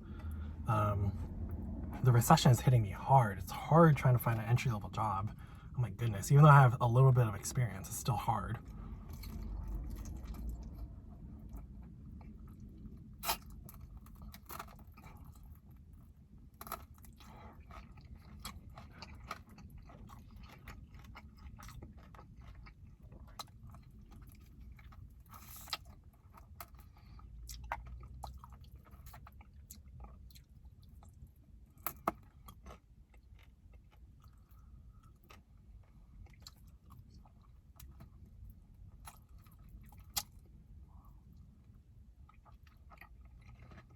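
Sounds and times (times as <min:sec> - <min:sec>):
low steady rumble: 0:00.0 - 0:43.9
chewing and biting chicken wings: 0:16.5 - 0:43.9.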